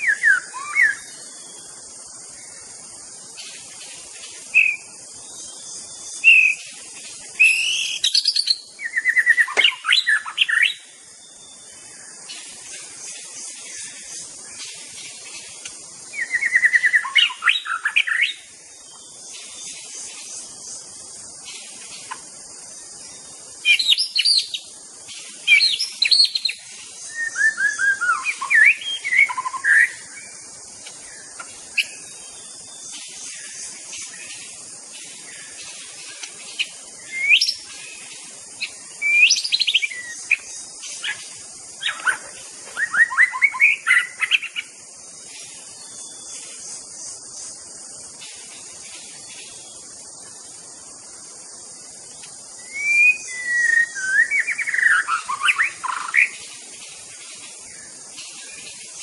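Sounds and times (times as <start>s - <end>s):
bird singing whistled phrases: 0.0s - 1.1s, 4.5s - 4.9s, 6.2s - 6.7s, 7.4s - 11.7s, 16.1s - 18.4s, 25.5s - 30.0s, 37.0s - 37.7s, 38.6s - 41.2s, 42.8s - 44.7s, 52.6s - 56.4s
faint steady high hiss: 0.0s - 59.0s.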